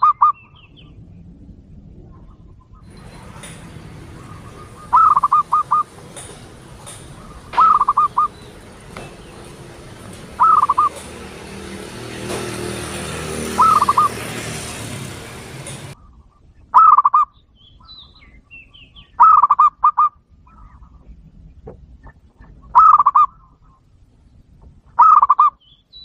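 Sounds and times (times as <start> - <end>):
bird calling short sharp notes: 2.9 - 11.2.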